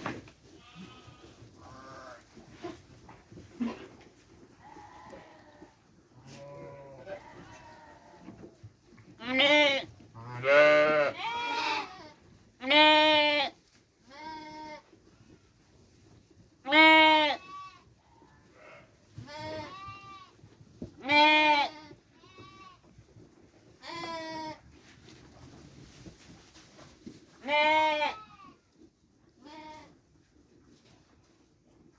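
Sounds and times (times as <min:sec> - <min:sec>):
sheep bleating: 0:00.6 - 0:02.2, 0:04.6 - 0:08.2, 0:09.2 - 0:14.8, 0:16.7 - 0:17.8, 0:18.5 - 0:20.4, 0:21.0 - 0:22.9, 0:23.8 - 0:24.6, 0:27.4 - 0:28.6.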